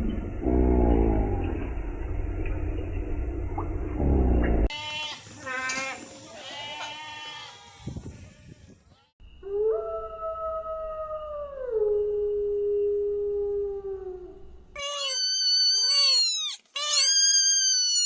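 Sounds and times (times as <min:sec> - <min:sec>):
animal howling: 0:09.4 - 0:16.3
high-pitched animal call: 0:13.8 - 0:18.0.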